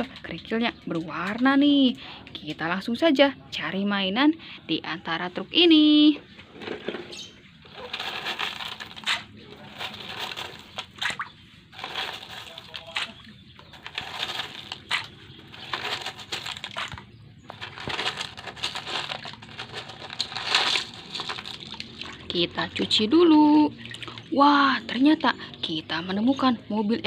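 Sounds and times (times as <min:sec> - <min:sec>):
gravel stones rattling and clicking: 0:06.6 - 0:22.3
hands scraping through gravel: 0:07.7 - 0:22.0.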